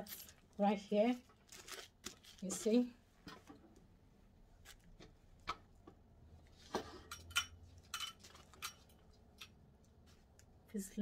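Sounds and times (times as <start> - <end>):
light clicks and small clinks: 7.1 - 10.5.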